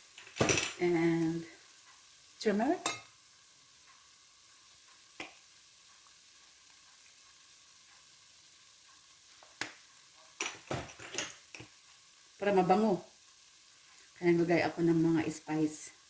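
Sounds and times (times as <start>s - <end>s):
food sizzling in a pot: 0.0s - 16.0s
spoon clinking against pot: 2.8s - 3.1s.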